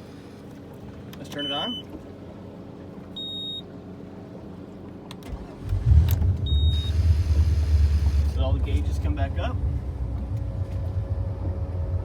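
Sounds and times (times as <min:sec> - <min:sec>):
boat engine running: 0:00.0 - 0:12.0
short high beep: 0:03.2 - 0:03.6, 0:06.5 - 0:07.0.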